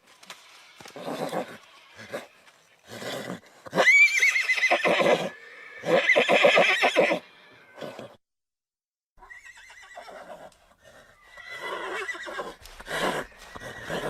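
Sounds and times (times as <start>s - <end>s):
horse whinnying: 0.8s - 2.3s, 2.9s - 8.2s, 9.2s - 14.0s
horse breathing: 10.2s - 14.0s.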